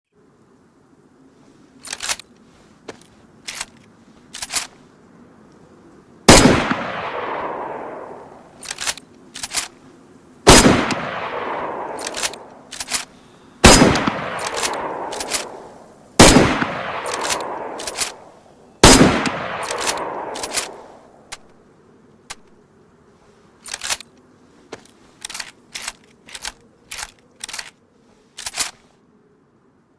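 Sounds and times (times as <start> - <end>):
rifle shots echoing: 6.3 - 9.7, 10.4 - 21.4.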